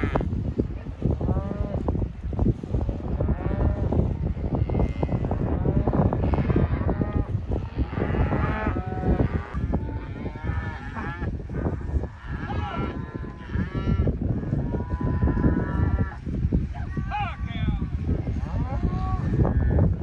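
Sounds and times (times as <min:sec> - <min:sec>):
cattle mooing and bawling: 0:03.1 - 0:16.2.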